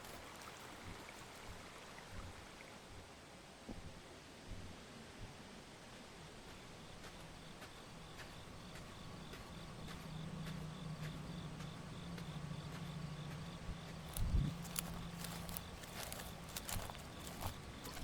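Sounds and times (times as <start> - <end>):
insects chirping: 0.0 - 1.5, 6.5 - 18.0
low hum: 6.8 - 18.0
footsteps on rock: 13.8 - 18.0.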